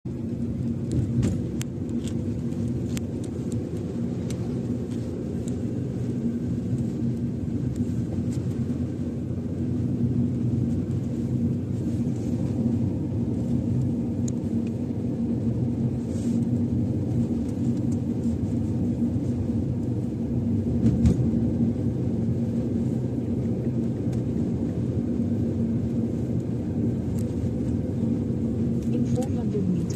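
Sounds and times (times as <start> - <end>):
car engine and road rumble: 0.0 - 29.9
sharp clicks and ticks: 1.6 - 5.6.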